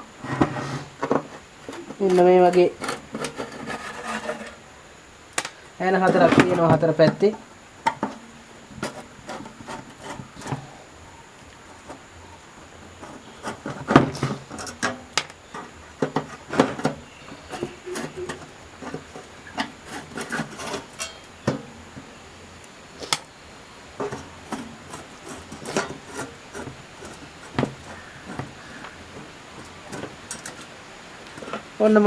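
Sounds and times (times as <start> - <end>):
short scraping: 0.0 - 4.8, 6.0 - 22.2, 24.0 - 31.8.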